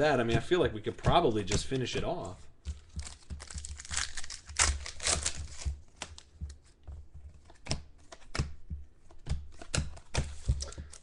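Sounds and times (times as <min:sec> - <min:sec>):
cards clicking and tapping: 0:00.2 - 0:11.0
wrappers crinkling and tearing: 0:02.8 - 0:06.3.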